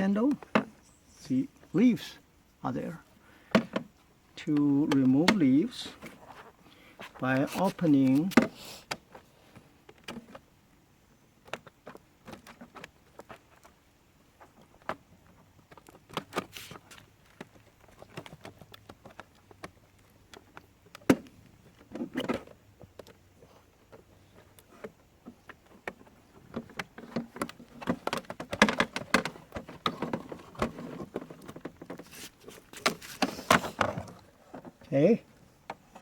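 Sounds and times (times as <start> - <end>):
rustling: 2.8 - 10.5, 11.2 - 36.0
plastic container clicks and knocks: 25.8 - 32.0.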